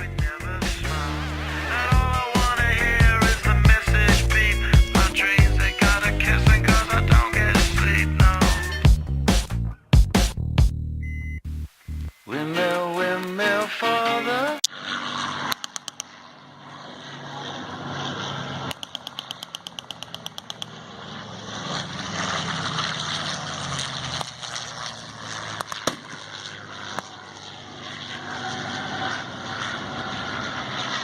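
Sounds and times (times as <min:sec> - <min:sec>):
vehicle engines running: 0:00.0 - 0:13.8, 0:14.6 - 0:31.0
outdoor noise wash: 0:00.3 - 0:03.5, 0:11.5 - 0:31.0.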